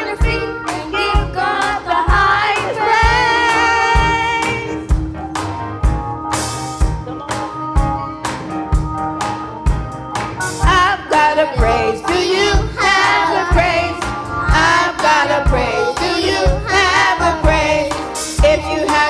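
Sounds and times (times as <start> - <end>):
choir singing gospel song: 0.0 - 4.9, 10.6 - 19.0.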